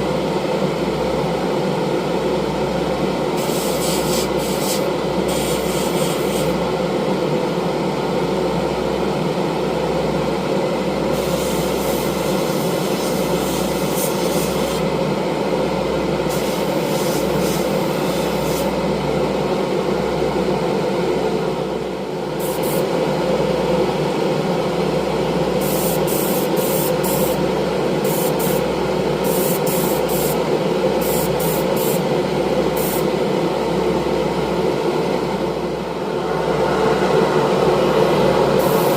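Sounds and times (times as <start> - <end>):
airbrush air hiss: 3.4 - 6.6, 11.1 - 14.8, 16.3 - 18.8, 22.4 - 22.9, 25.6 - 27.4, 28.0 - 30.4, 31.0 - 32.1, 32.8 - 33.1, 38.6 - 38.9
airbrush setup running: 3.4 - 6.7, 11.1 - 15.0, 16.3 - 18.8, 22.3 - 23.1, 25.5 - 33.4, 36.6 - 38.9.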